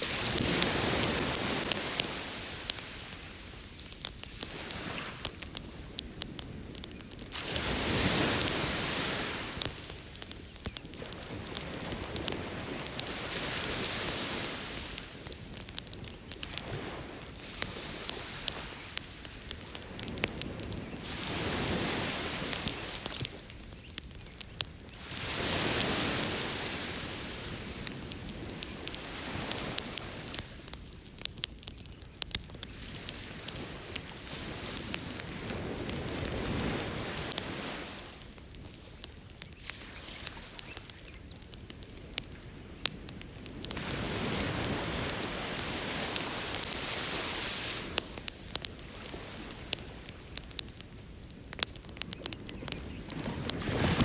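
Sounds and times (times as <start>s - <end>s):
ocean surf: 0.0s - 3.2s, 7.3s - 10.0s, 11.0s - 19.1s, 19.8s - 23.3s, 25.0s - 30.5s, 43.6s - 50.2s, 53.1s - 54.0s
campfire crackling and popping: 0.0s - 54.0s.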